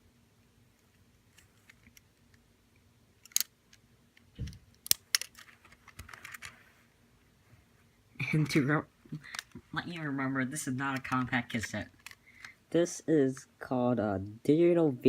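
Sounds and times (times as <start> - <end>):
plastic tape cassette clicks: 3.2 - 3.8, 4.7 - 6.5, 11.0 - 12.6.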